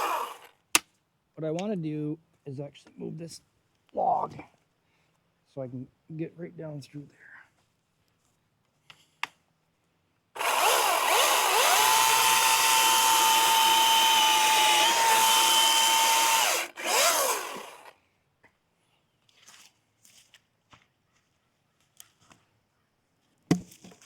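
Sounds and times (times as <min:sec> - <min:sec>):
battery chainsaw motor whining: 0:00.0 - 0:00.5, 0:10.4 - 0:17.9.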